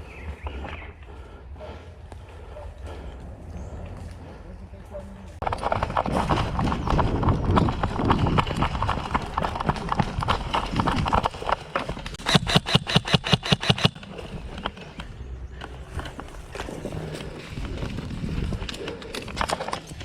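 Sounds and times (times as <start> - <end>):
airsoft gun shots: 12.2 - 14.0.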